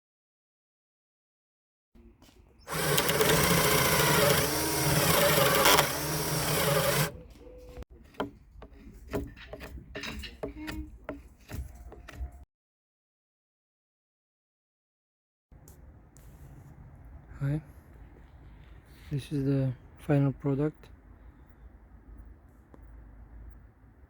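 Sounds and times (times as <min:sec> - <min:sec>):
electric power tool working wood: 0:02.7 - 0:07.2.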